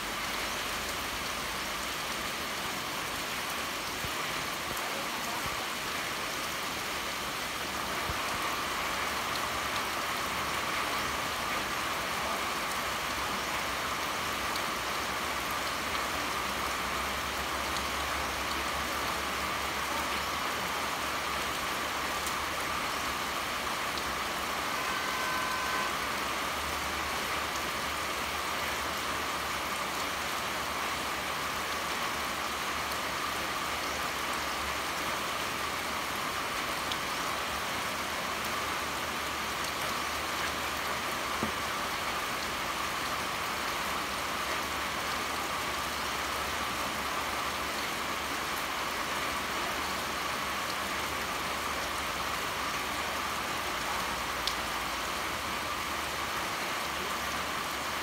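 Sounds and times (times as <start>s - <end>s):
steady pouring rain: 0.0s - 58.0s.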